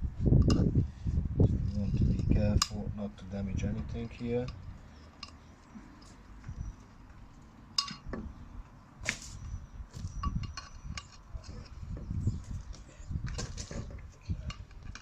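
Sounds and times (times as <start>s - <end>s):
metal parts clinking: 7.8s - 8.1s, 10.2s - 11.8s.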